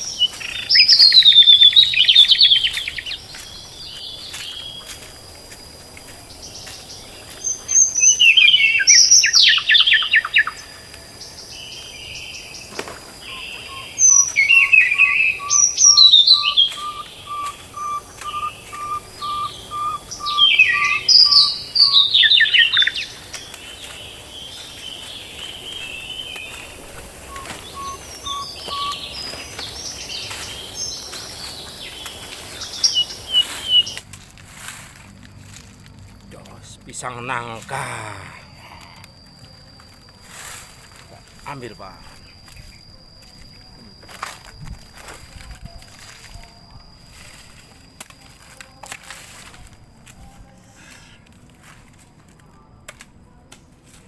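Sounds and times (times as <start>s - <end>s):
songbirds trilling: 0.0s - 34.0s
bird whistling single note: 27.3s - 29.1s.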